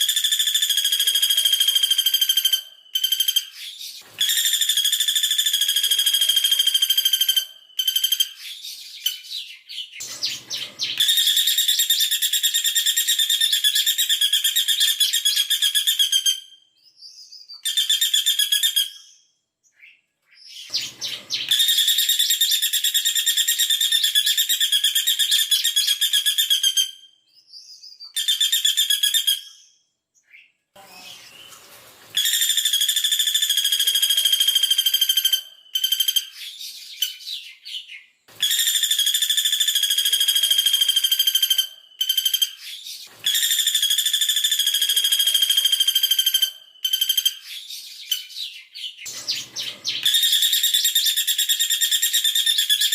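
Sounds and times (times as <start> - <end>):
bird calling in rapid trills: 20.6 - 26.8, 38.4 - 52.9.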